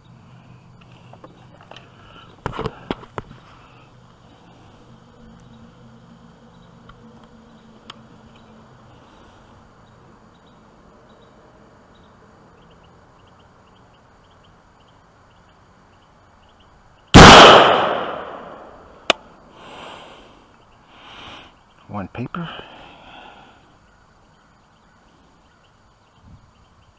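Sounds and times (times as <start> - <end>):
loud rifle shot: 17.2 - 18.8.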